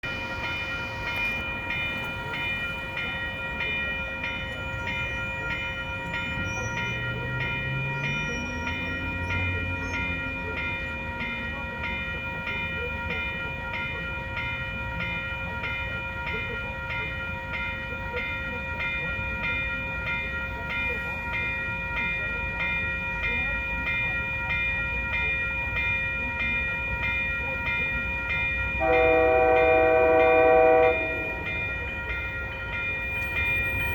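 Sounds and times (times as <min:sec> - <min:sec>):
low rumble of train: 0:00.0 - 0:33.9
warning bell ringing fast: 0:00.0 - 0:33.9
multi-note train air horn: 0:28.8 - 0:31.5.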